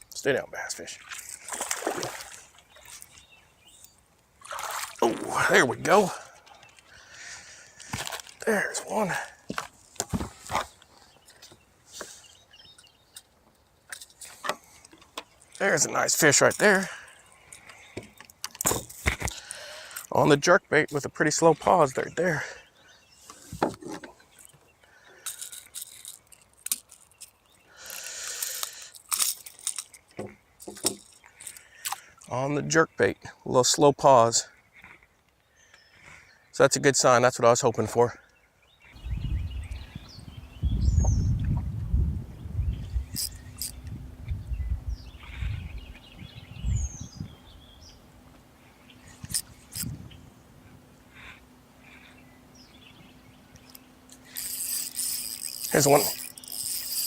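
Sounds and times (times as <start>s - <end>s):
birds chirping: 0.0s - 41.6s, 42.3s - 57.0s
wind buffeting microphone: 39.0s - 47.9s, 49.3s - 50.4s
metallic clicks and rattles: 53.6s - 57.0s.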